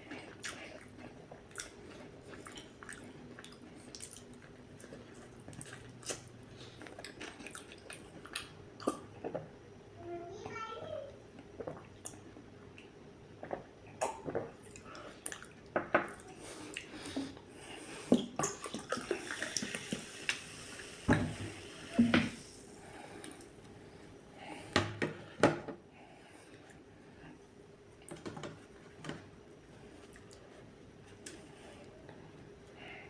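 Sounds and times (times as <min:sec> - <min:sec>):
chewing: 0:00.0 - 0:09.4, 0:11.6 - 0:17.2.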